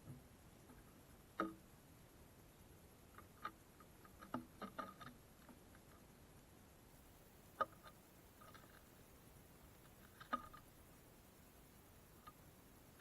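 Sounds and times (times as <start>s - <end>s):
birds pecking on wooden feeder: 3.0s - 6.5s, 7.4s - 11.0s.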